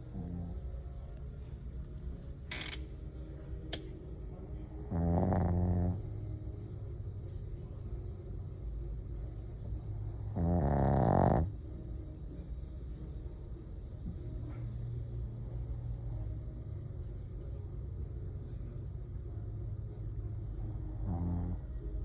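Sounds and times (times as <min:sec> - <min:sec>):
dog snoring: 0:00.0 - 0:01.0, 0:04.4 - 0:06.2, 0:09.6 - 0:11.6, 0:15.1 - 0:16.4, 0:20.4 - 0:21.9.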